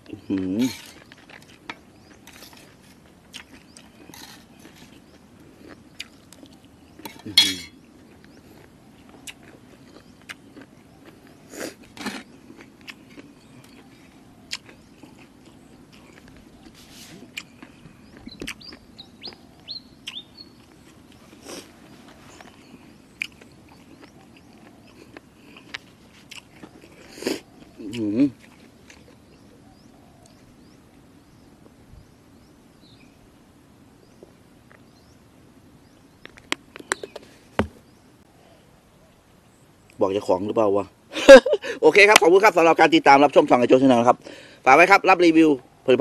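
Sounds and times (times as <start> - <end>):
wet chewing and crunching: 0.0 - 30.4
small bird chirping: 1.8 - 25.7.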